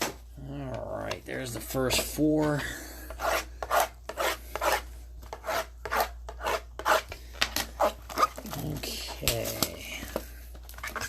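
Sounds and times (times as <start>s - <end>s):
hands scraping box wrapping: 3.1s - 9.8s, 10.7s - 11.0s.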